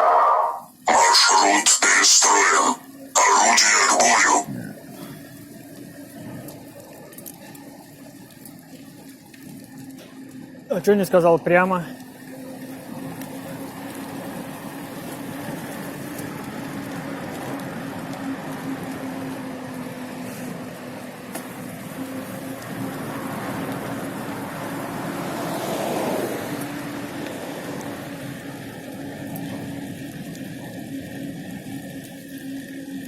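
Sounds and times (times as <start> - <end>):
motorbike engine humming: 2.5 - 33.0
wind and road noise: 4.2 - 33.0.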